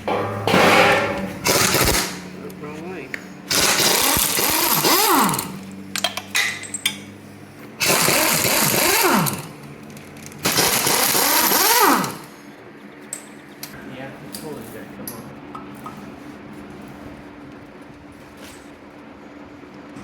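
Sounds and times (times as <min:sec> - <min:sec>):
power tool whirring: 0:01.4 - 0:02.8, 0:03.4 - 0:06.1, 0:07.8 - 0:12.4.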